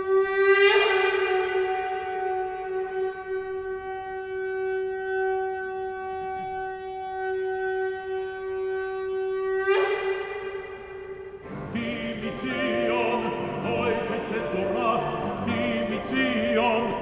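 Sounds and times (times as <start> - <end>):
shofar blast: 0.0 - 11.4.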